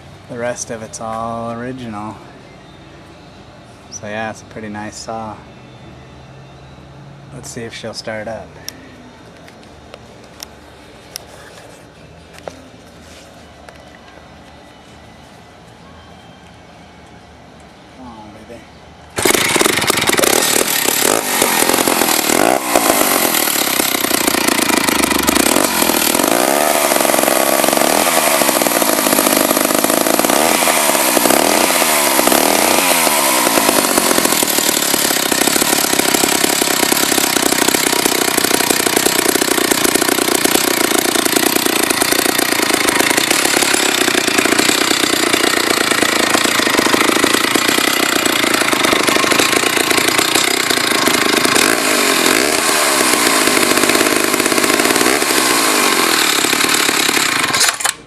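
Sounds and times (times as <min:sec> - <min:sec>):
chainsaw engine revving: 0:19.2 - 0:58.0.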